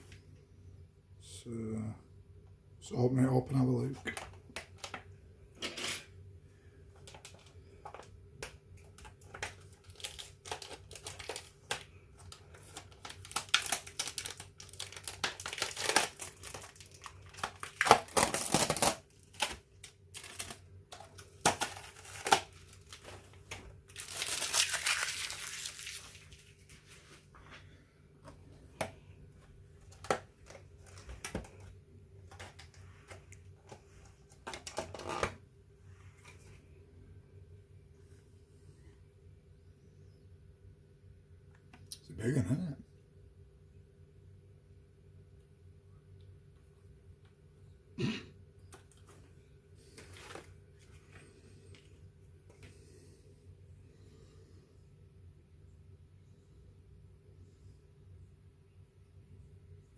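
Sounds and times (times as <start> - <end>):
packaging crinkling and tearing: 7.0 - 27.0, 29.8 - 31.7, 49.8 - 51.9.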